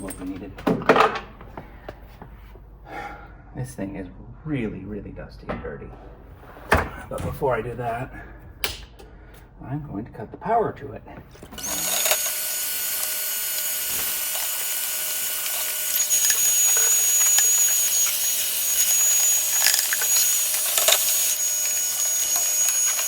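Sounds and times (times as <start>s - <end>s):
vacuum cleaner running: 11.4s - 23.0s.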